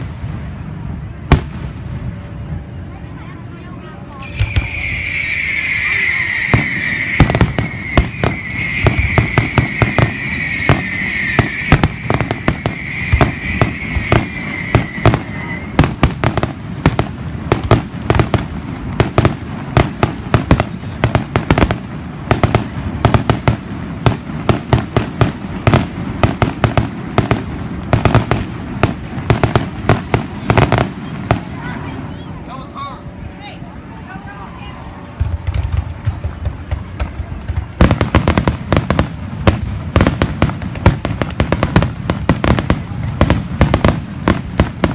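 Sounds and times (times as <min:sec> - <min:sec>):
fireworks bangs and cracks: 0:00.0 - 0:02.2, 0:04.2 - 0:32.4, 0:35.1 - 0:44.9
high hissing whistle: 0:04.2 - 0:15.8.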